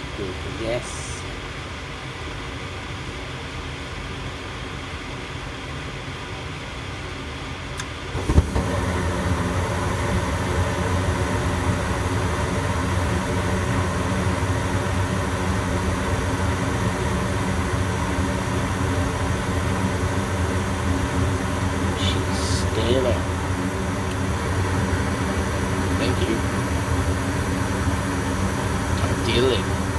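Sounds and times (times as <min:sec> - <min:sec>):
furnace fan hum: 0:00.0 - 0:29.9
gas furnace running: 0:00.0 - 0:29.9
burners lighting with a thump: 0:07.8 - 0:10.2.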